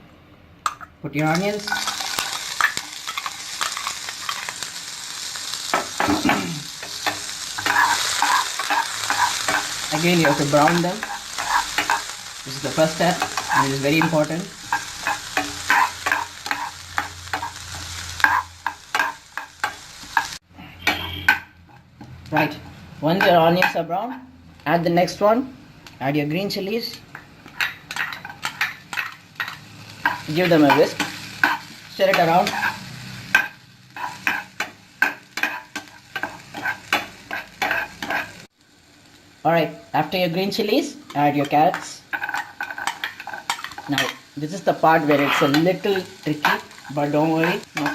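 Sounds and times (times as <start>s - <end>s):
onions sizzling in oil: 1.2s - 47.9s
utensil scraping frying pan: 1.3s - 23.8s, 27.1s - 38.5s, 41.1s - 47.9s
utensil scraping a pan: 27.5s - 38.4s.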